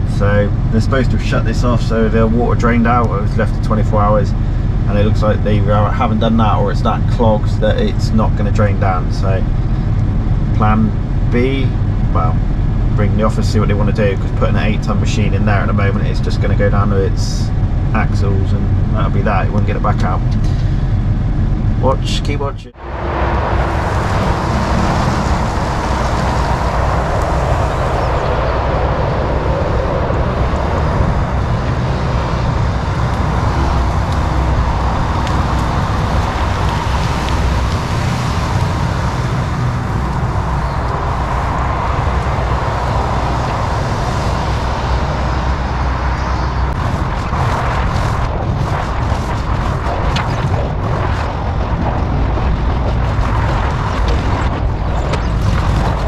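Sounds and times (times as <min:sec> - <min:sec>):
excavator diesel engine running: 0:00.0 - 0:56.0
knocks and clatter: 0:48.4 - 0:56.0.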